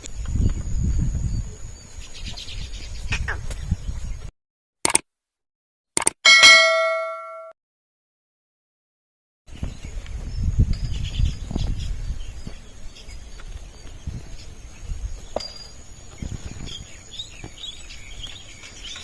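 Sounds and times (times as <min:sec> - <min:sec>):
birds chirping: 0:09.5 - 0:19.0.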